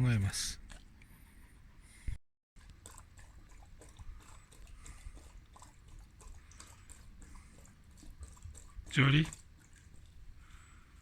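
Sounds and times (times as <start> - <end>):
dog chewing and gnawing: 0.4 - 1.1, 2.6 - 10.6.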